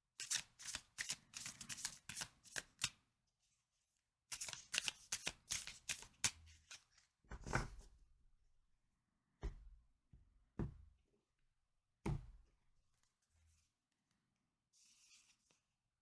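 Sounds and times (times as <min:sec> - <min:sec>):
cards brushing: 0:00.2 - 0:03.0, 0:04.3 - 0:06.8.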